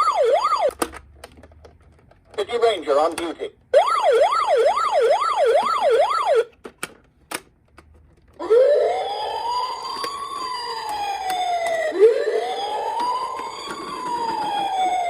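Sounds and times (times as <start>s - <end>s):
toy electronic siren: 0.0s - 0.7s, 3.8s - 6.5s, 8.4s - 15.0s.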